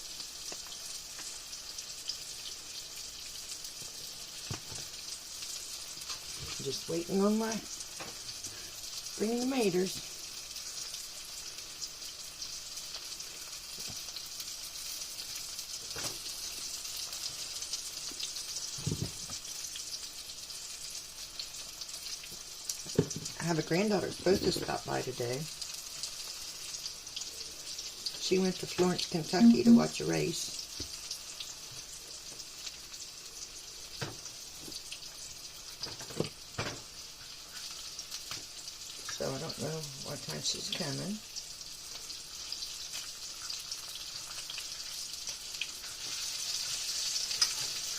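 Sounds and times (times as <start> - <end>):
sharp pops of frying: 0.0 - 6.8, 7.6 - 29.8, 30.6 - 39.3, 41.3 - 47.9
tomato slices sizzling in pan: 0.0 - 47.9.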